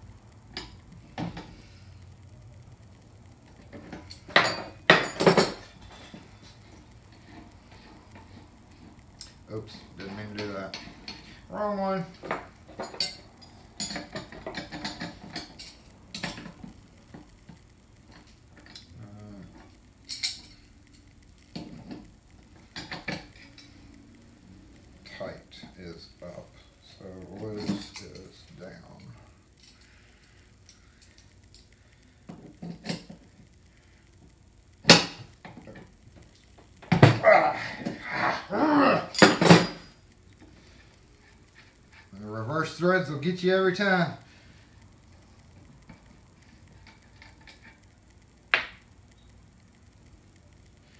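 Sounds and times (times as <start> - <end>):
metal tools clinking: 3.8 - 6.6, 12.2 - 16.5, 27.4 - 29.9, 39.1 - 39.9.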